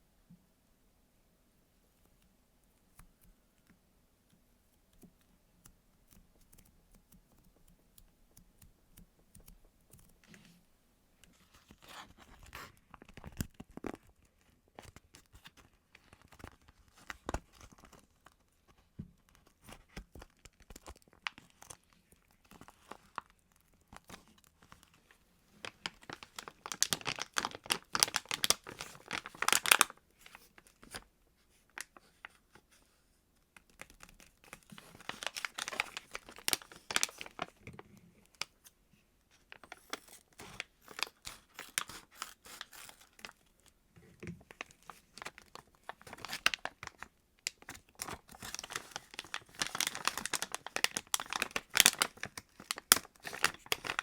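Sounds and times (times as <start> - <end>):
plastic wrapping crinkling and tearing: 11.6 - 31.0, 33.6 - 38.6, 39.4 - 43.8, 44.4 - 54.0.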